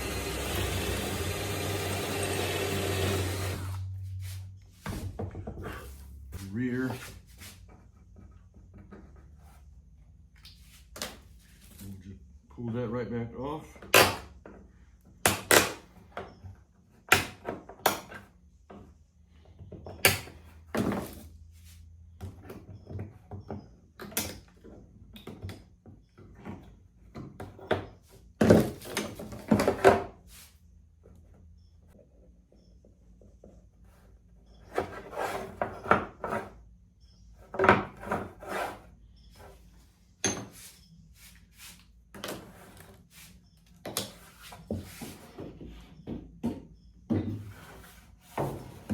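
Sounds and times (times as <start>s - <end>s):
wood knocking and scraping on wood: 34.6s - 36.6s, 37.4s - 39.6s, 40.3s - 48.9s.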